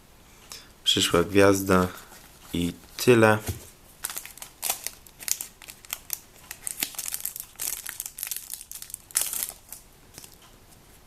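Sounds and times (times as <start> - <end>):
foil wrappers crinkling: 2.0 - 10.4.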